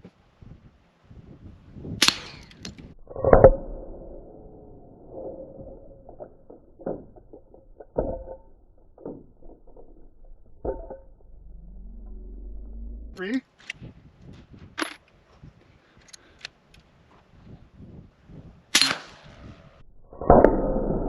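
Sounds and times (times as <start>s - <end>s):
suppressed gunshot: 2.0s - 2.8s, 18.7s - 19.8s
bullet striking steel plate: 2.0s - 11.4s, 18.7s - 20.8s
steel plate clanking: 4.7s - 11.5s.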